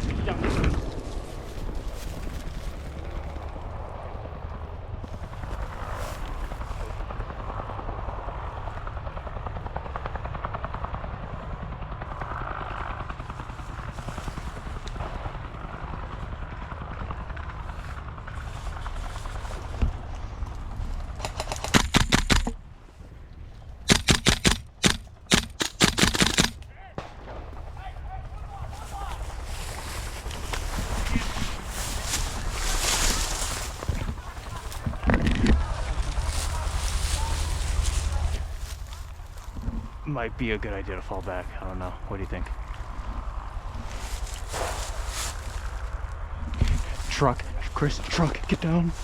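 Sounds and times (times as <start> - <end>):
steady low rumble: 0.0 - 49.0
automatic airsoft gunfire: 21.2 - 22.6, 23.8 - 27.1.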